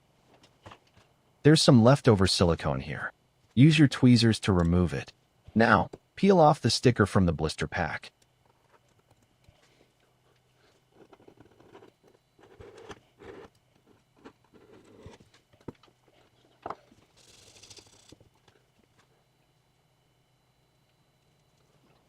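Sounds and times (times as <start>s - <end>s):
crinkly hiss: 15.4s - 19.1s.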